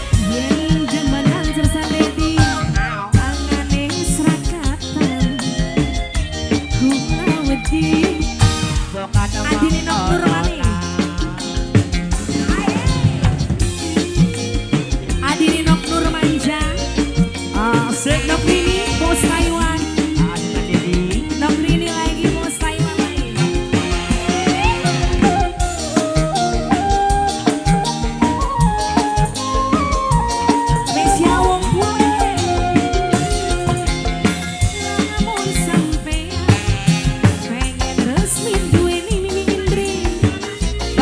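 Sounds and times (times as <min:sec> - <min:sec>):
drums and percussion beat: 0:00.0 - 0:41.0
live band playing: 0:00.0 - 0:41.0
gliding melody line: 0:12.3 - 0:41.0.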